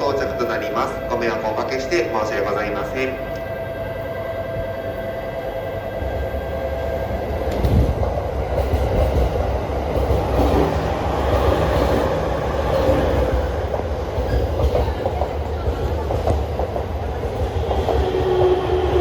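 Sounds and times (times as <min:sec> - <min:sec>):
train wheels rumbling on rails: 0:05.8 - 0:19.0.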